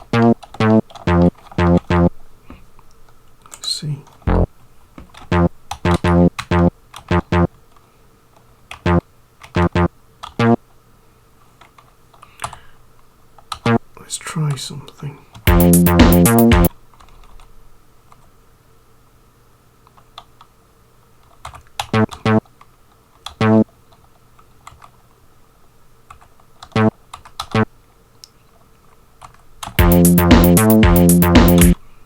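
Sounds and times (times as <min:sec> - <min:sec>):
computer keyboard typing: 0:00.0 - 0:02.1, 0:05.1 - 0:07.5, 0:21.4 - 0:22.4, 0:24.6 - 0:24.9, 0:26.1 - 0:27.6
short bass notes: 0:00.0 - 0:02.1, 0:04.3 - 0:04.5, 0:05.3 - 0:07.5, 0:09.6 - 0:10.6, 0:15.5 - 0:16.7, 0:23.4 - 0:23.6, 0:29.8 - 0:31.8
tracker music with drum beat: 0:00.0 - 0:02.1, 0:04.3 - 0:04.5, 0:05.3 - 0:07.5, 0:09.6 - 0:10.6, 0:15.5 - 0:16.7, 0:23.4 - 0:23.6, 0:29.8 - 0:31.8.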